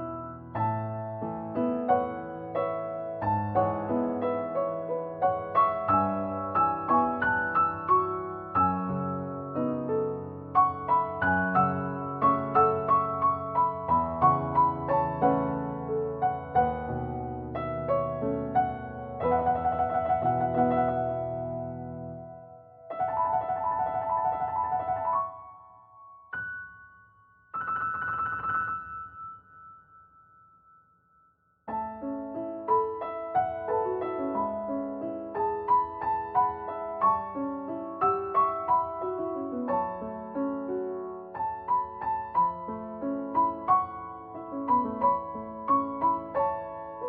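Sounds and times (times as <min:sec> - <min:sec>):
piano music: 0:00.0 - 0:31.0, 0:31.6 - 0:47.0.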